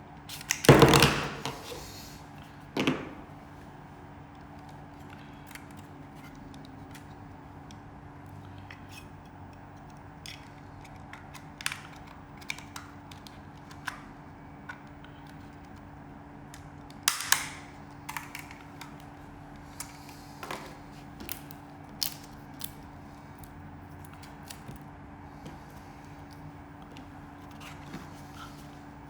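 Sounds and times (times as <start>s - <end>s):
steady low electrical hum: 0.0s - 29.0s
plastic parts snapping: 0.3s - 1.8s, 9.8s - 15.8s, 16.5s - 24.8s
packaging rustling: 18.0s - 29.0s.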